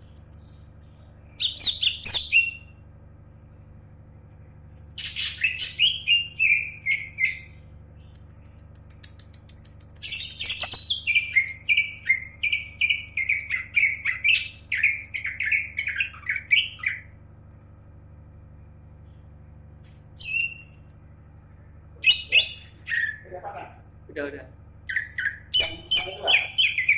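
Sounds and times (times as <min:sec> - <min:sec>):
bird chirping: 0:00.0 - 0:02.7, 0:05.0 - 0:09.0, 0:09.9 - 0:17.1, 0:20.2 - 0:20.9, 0:22.0 - 0:23.3, 0:24.9 - 0:26.9.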